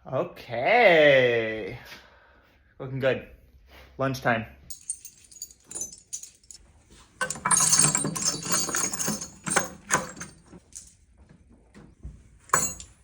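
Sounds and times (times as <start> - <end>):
metal tools clattering: 4.7 - 6.6, 7.2 - 11.0, 12.5 - 13.0.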